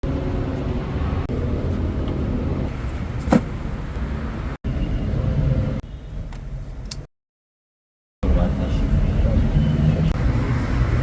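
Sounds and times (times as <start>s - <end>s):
car engine rumbling: 0.0s - 5.8s.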